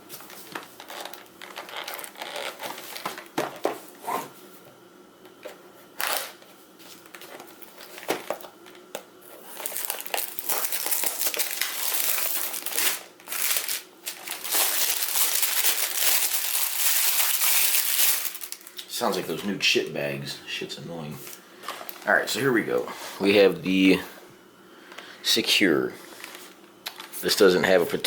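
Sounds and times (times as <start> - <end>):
plastic packaging crinkling: 0.0 - 3.6, 6.0 - 19.5, 21.2 - 22.5, 26.0 - 27.5.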